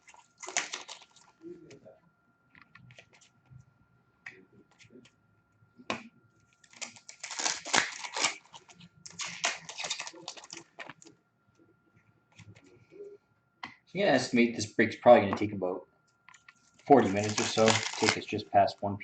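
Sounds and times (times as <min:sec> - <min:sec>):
plastic wrapping crinkling and tearing: 0:00.0 - 0:01.6, 0:06.6 - 0:11.1, 0:16.6 - 0:18.4.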